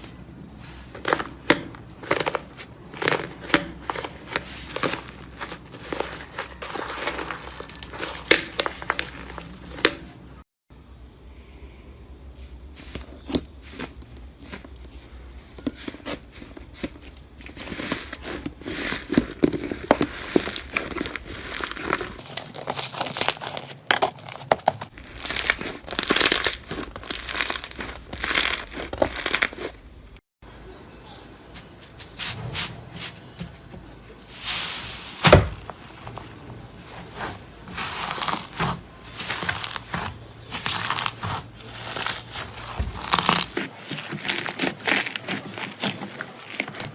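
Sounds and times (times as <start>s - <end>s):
slime crinkly tearing: 0.9s - 10.0s, 15.7s - 29.8s, 36.9s - 46.9s
slime crackling and popping: 1.0s - 10.0s, 15.8s - 29.8s, 37.7s - 46.9s.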